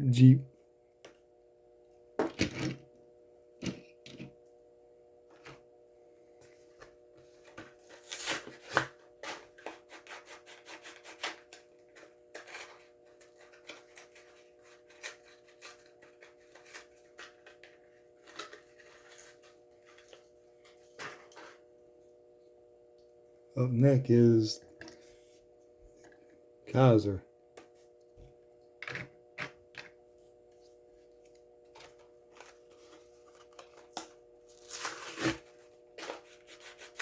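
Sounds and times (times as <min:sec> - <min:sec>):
faint steady hum: 0:00.0 - 0:37.0
hands handling toy packaging: 0:07.6 - 0:21.6, 0:31.7 - 0:35.4.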